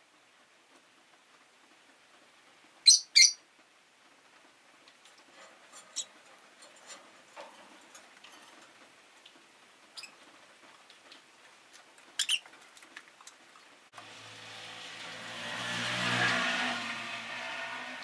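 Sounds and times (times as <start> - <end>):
lovebirds chirping: 2.9 - 3.4, 12.2 - 12.5.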